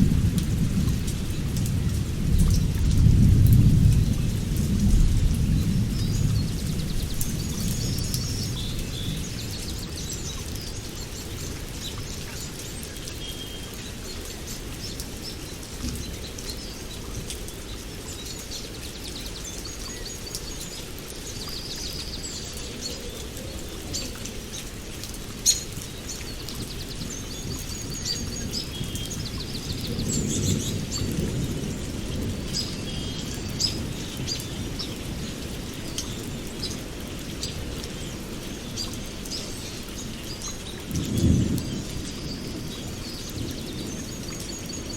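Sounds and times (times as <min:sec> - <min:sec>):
thunder rumble: 0:00.0 - 0:10.1, 0:26.8 - 0:35.4, 0:40.8 - 0:44.9
steady rain: 0:00.0 - 0:44.9.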